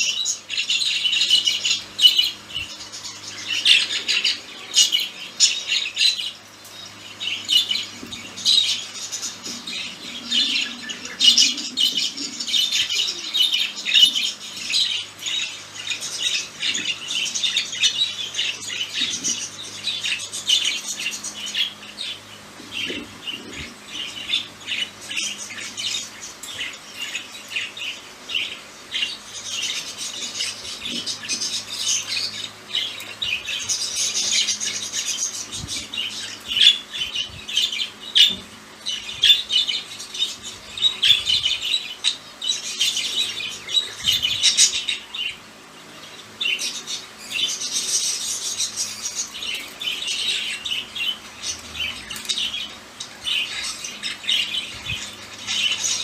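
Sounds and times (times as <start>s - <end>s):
budgerigars chattering: 46.0s - 56.0s.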